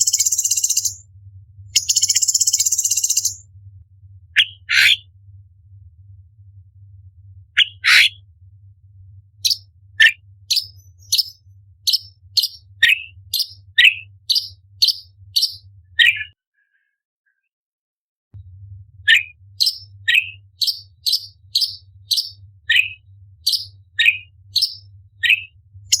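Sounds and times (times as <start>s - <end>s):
bird chirps and whistles: 0.0s - 1.0s, 1.8s - 3.4s, 4.4s - 5.0s, 7.6s - 8.1s, 9.4s - 16.4s, 19.1s - 26.0s.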